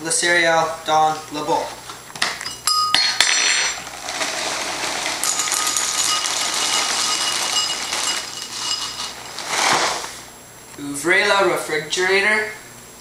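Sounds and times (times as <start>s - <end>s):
cereal poured into a bowl: 3.8s - 10.1s.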